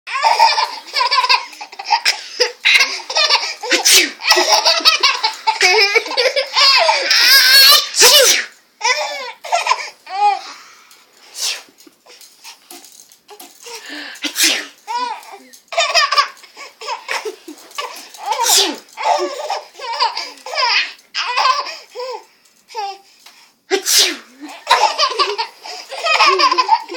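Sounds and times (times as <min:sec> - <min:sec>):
baby laughing: 0:00.1 - 0:08.2, 0:08.8 - 0:10.5, 0:14.8 - 0:23.0, 0:24.4 - 0:26.9
sneezes: 0:03.6 - 0:04.4, 0:07.2 - 0:08.6, 0:11.3 - 0:11.8, 0:14.1 - 0:15.0, 0:18.2 - 0:19.2, 0:23.7 - 0:24.8.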